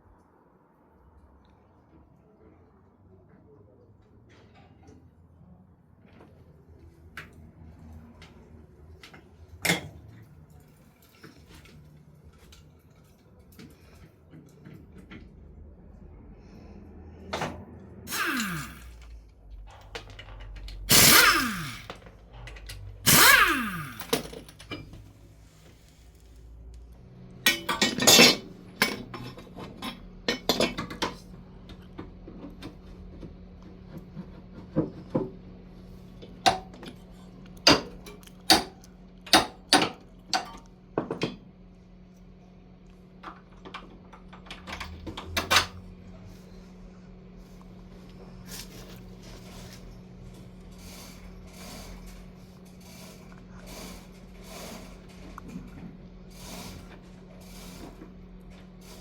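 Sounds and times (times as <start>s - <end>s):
clattering bursts: 18.1s - 19.1s, 20.4s - 25.2s.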